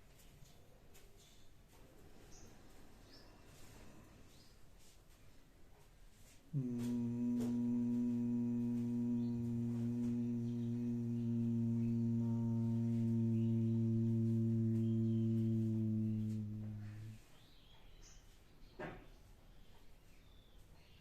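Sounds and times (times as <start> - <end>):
person humming: 6.6 - 17.2.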